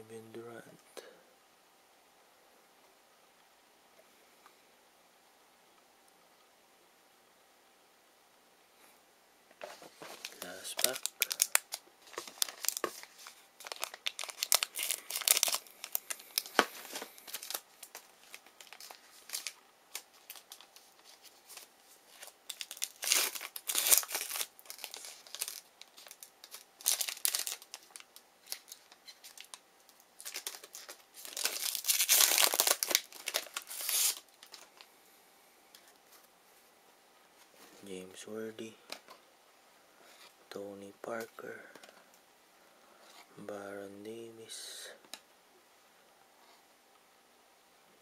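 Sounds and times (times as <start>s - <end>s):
wrapper tearing and crinkling: 10.1s - 34.8s.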